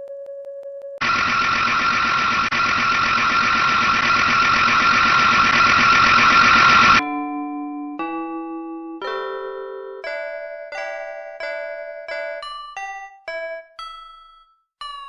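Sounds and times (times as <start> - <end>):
harsh buzzing alarm: 1.0 - 7.0
electronic keyboard chime: 1.0 - 15.0.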